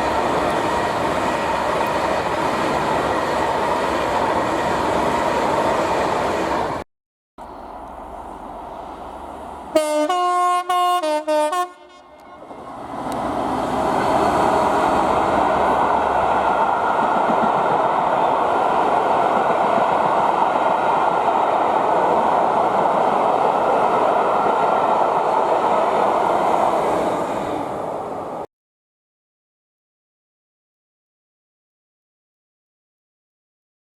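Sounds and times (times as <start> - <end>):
train rolling past: 0.0 - 6.8, 7.4 - 28.5
train horn short blasts: 9.8 - 12.6.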